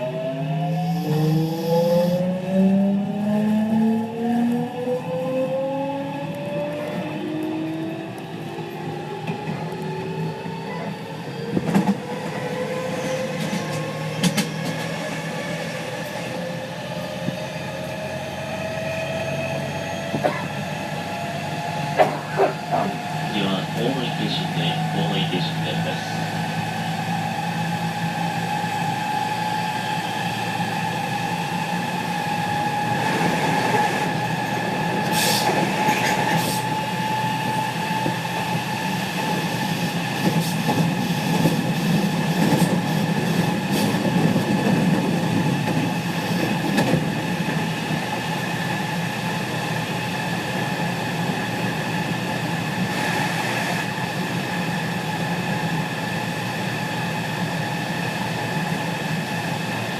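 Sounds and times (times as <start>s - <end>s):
rail-joint and wheel clicks: 13.4s - 15.0s.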